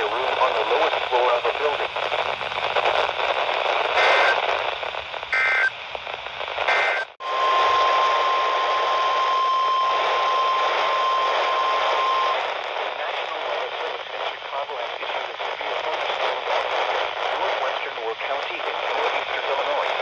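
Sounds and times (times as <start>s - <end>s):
radio static hiss: 0.0s - 20.0s
steady warning alarm tone: 4.0s - 4.4s, 5.3s - 5.7s, 6.7s - 12.4s
digital data squawks: 5.3s - 5.7s.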